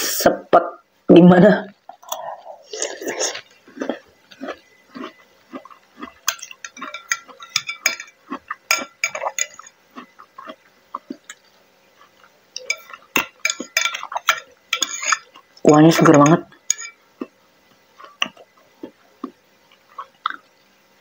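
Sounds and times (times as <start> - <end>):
spoon clinking against bowl: 6.0 - 9.8, 12.6 - 15.4, 16.2 - 17.0.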